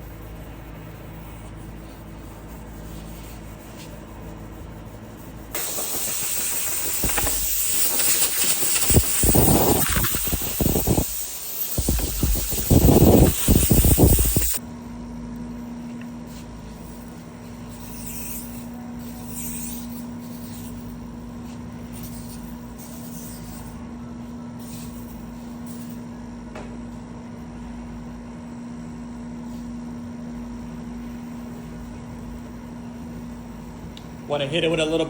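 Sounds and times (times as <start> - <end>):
steady low hum: 0.0 - 35.0
abrasive rasping on metal door: 4.4 - 14.6.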